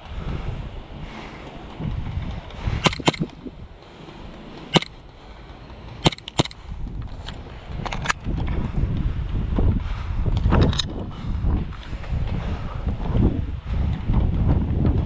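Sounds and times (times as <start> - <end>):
wind rumble on microphone: 0.0 - 15.0
airsoft gun shots: 2.8 - 3.3, 4.7 - 5.0, 6.0 - 6.6.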